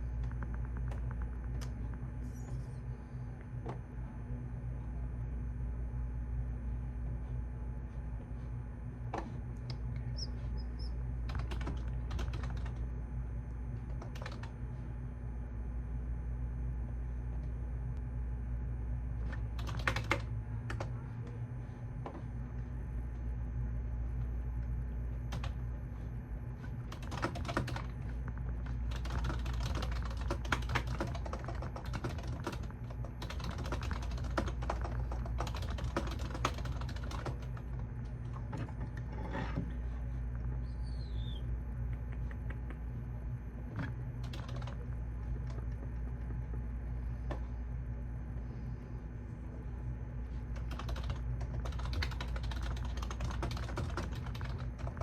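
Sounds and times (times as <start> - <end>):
steady low hum: 0.0 - 55.0
keyboard typing: 9.7 - 12.9, 13.8 - 14.6, 19.3 - 20.9, 26.7 - 39.0, 43.8 - 46.6, 50.5 - 55.0.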